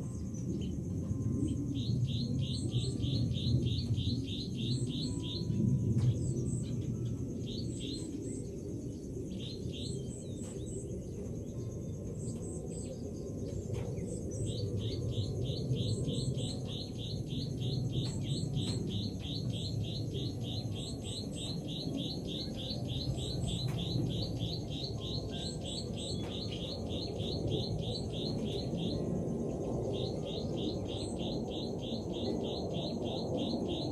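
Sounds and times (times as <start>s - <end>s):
bird chirping: 1.5s - 8.6s, 13.8s - 33.9s
higher bird chirps: 14.3s - 33.9s.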